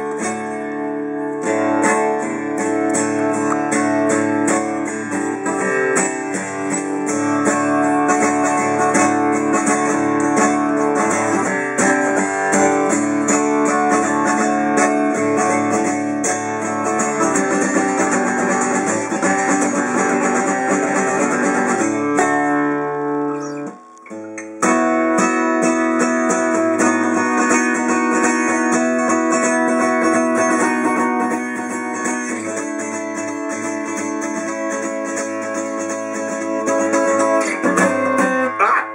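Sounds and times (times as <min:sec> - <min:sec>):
acoustic guitar strummed and picked: 0:00.0 - 0:38.9.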